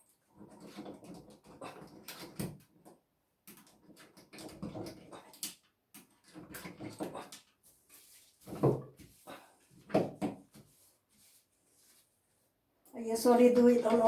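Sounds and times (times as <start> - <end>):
wire hanger scraping in drain: 0.3 - 2.5.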